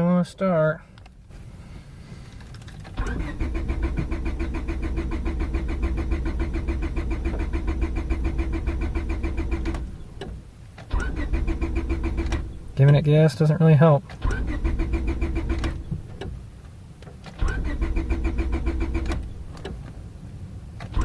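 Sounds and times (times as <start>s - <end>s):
starter cranking car engine: 2.2s - 13.2s, 14.0s - 16.4s, 17.1s - 20.1s, 20.8s - 21.0s.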